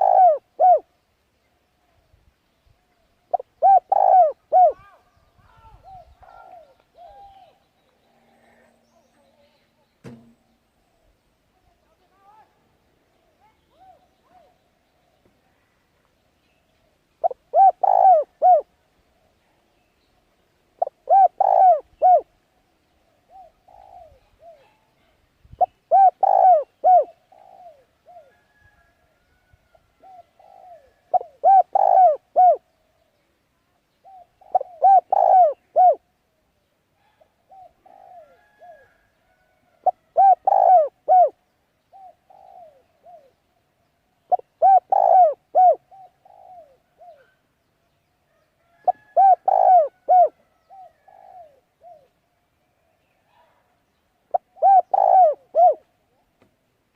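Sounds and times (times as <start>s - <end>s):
pigeon cooing: 0.0s - 0.9s, 3.3s - 5.0s, 5.7s - 7.6s, 17.2s - 18.7s, 20.8s - 22.3s, 23.3s - 24.8s, 25.6s - 28.6s, 30.0s - 32.7s, 34.0s - 36.0s, 37.0s - 39.0s, 39.8s - 43.4s, 44.3s - 47.4s, 48.7s - 52.1s, 54.3s - 56.2s.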